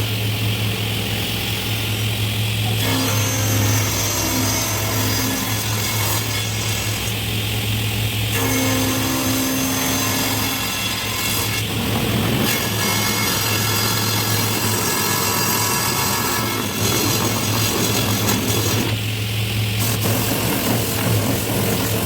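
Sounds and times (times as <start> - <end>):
power tool motor whining: 8.3 - 19.1.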